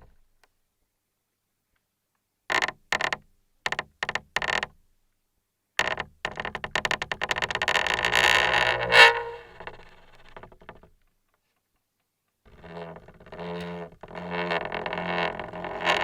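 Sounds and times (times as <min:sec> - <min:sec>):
creaking: 0:05.8 - 0:11.0, 0:12.5 - 0:16.0.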